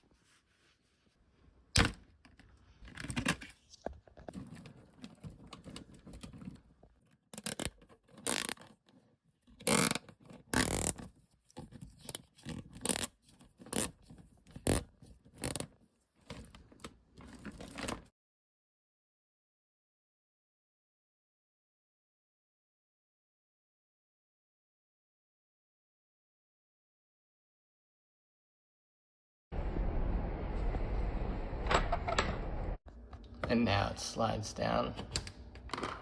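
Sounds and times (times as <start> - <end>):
zip ties scratchy rasps: 7.4 - 8.6, 9.6 - 10.0, 10.6 - 11.1, 12.8 - 13.1, 13.7 - 13.9.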